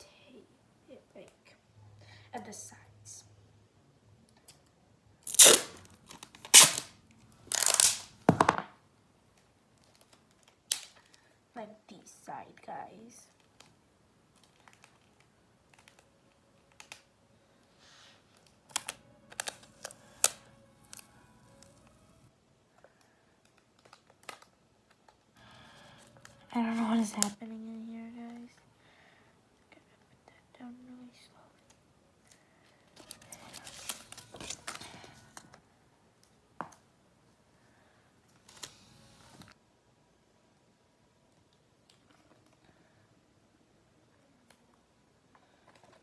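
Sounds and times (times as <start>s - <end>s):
sharp crackle of tape: 5.2s - 8.3s, 9.3s - 11.2s, 13.2s - 17.1s, 17.7s - 22.3s, 22.9s - 27.4s, 31.6s - 35.6s, 38.3s - 39.6s
sticky tape rasp: 5.3s - 5.8s, 6.5s - 6.9s
tape and paper crinkling: 5.3s - 8.1s, 18.3s - 22.2s, 33.0s - 35.5s.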